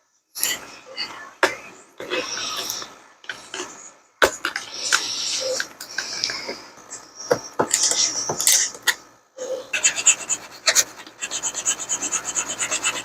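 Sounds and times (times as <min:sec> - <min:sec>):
hand file rasping on plastic: 0:09.8 - 0:13.0.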